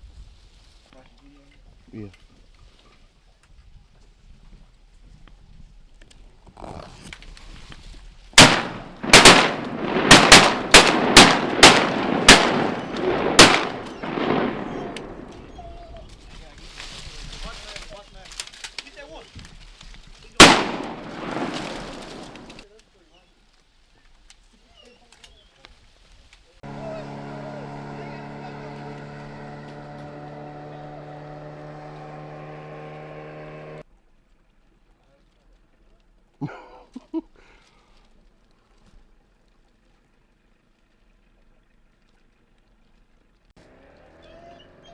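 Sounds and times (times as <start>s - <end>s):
shotguns firing with echo: 8.4s - 15.6s, 20.4s - 22.6s
boat motor droning: 26.6s - 33.8s.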